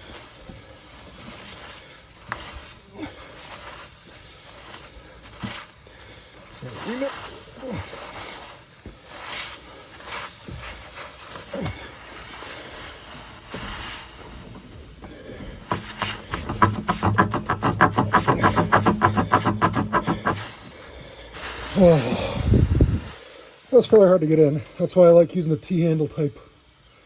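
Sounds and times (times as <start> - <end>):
air hissing: 0.0 - 24.8
reamer scraping in tire: 15.6 - 20.7
rhythmic rasping strokes: 15.6 - 20.8.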